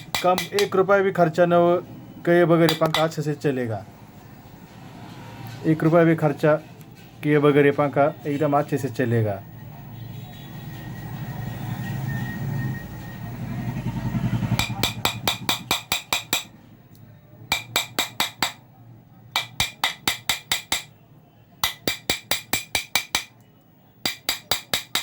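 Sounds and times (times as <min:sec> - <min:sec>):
hammer tapping on metal: 0:00.0 - 0:00.8, 0:02.7 - 0:03.2, 0:14.6 - 0:16.6, 0:17.5 - 0:18.6, 0:19.3 - 0:21.0, 0:21.6 - 0:23.4, 0:24.0 - 0:25.0.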